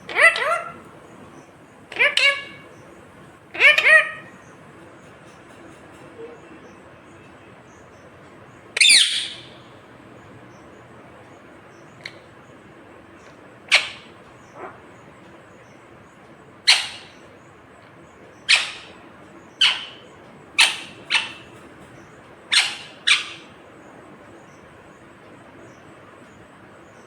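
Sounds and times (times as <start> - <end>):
parakeet screeching calls: 0.0 - 0.9, 1.9 - 2.8, 3.5 - 4.4, 8.8 - 9.6, 13.7 - 14.8, 16.6 - 17.2, 18.3 - 21.6, 22.5 - 23.5.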